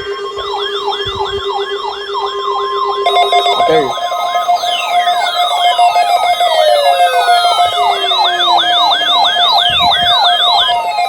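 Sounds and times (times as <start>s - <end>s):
siren whooping: 0.0s - 11.0s
long falling glides: 3.1s - 11.0s
steady electronic tone: 3.1s - 11.0s.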